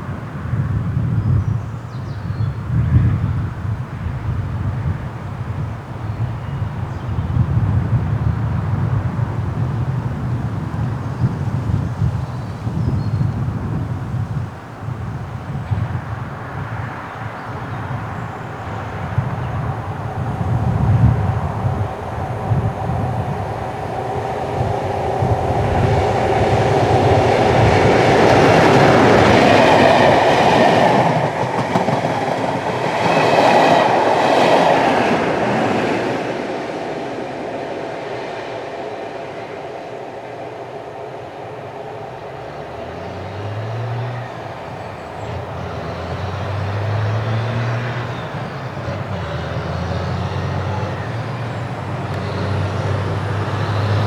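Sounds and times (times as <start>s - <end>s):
train engine passing: 0.0s - 54.0s
train wheel clatter: 4.9s - 54.0s.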